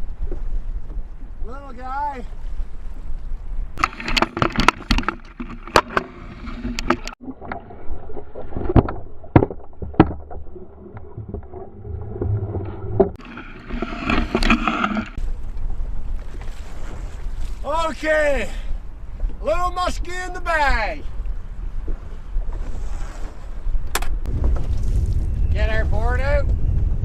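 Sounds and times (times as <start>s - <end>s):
knocks and clatter in a boat: 0.0s - 1.8s, 3.8s - 7.6s, 8.4s - 17.6s, 21.0s - 27.0s.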